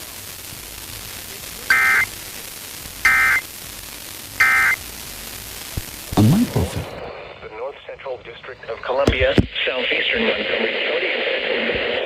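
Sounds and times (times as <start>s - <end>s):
faint static hiss: 0.0s - 12.0s
digital data tone bursts: 1.7s - 2.1s, 3.0s - 3.5s, 4.4s - 4.8s.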